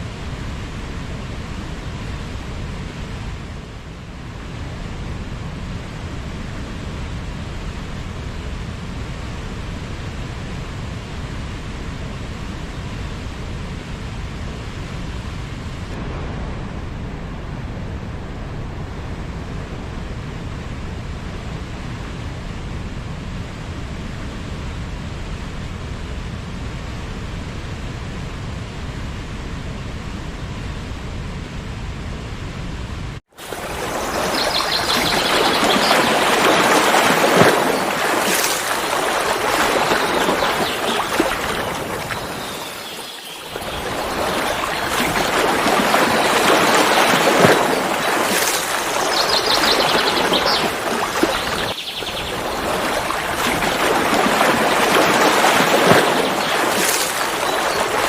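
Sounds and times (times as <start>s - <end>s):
waterfall rushing: 33.4s - 58.0s.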